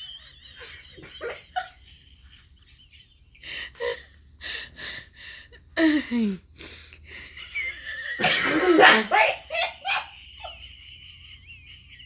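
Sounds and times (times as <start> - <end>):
wheezing gasping breaths: 3.4 - 8.6.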